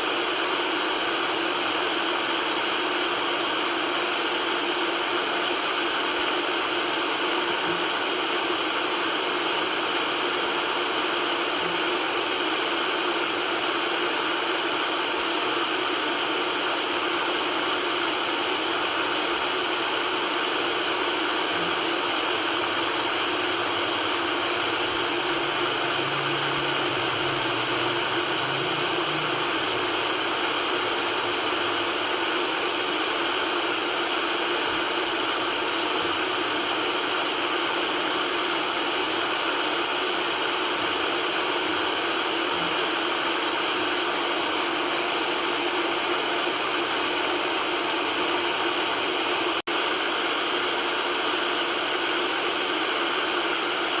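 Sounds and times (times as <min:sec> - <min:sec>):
white noise hiss: 0:22.3 - 0:32.2.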